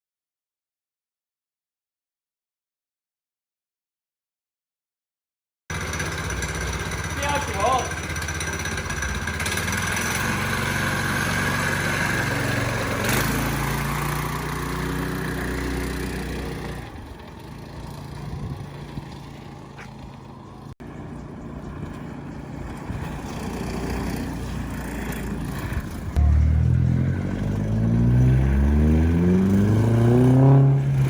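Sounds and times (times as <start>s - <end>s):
engine running steadily: 5.7s - 31.0s.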